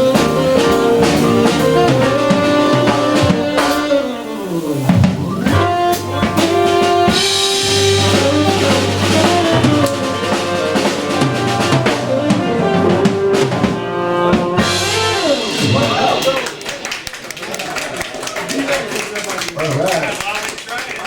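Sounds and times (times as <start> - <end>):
jazz combo playing: 0.0 - 17.1.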